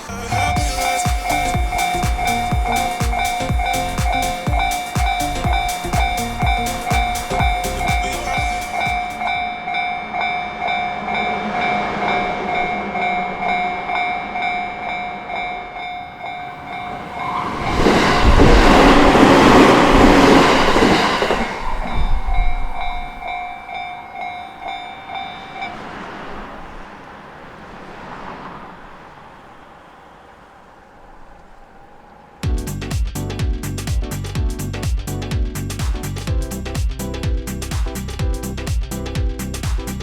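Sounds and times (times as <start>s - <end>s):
level-crossing bell ringing: 0.0s - 17.4s, 21.9s - 25.8s
train wheels passing: 0.0s - 32.4s.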